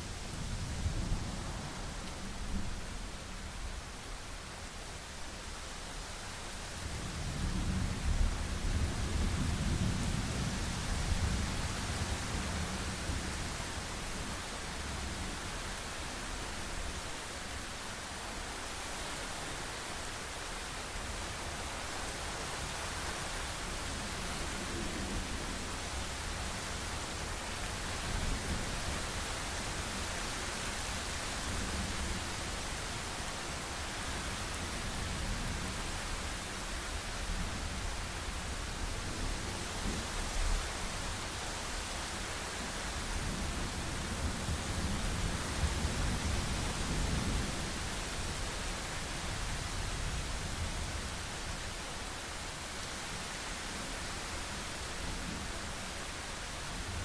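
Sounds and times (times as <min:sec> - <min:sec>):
heavy rain falling: 0:00.0 - 0:57.0.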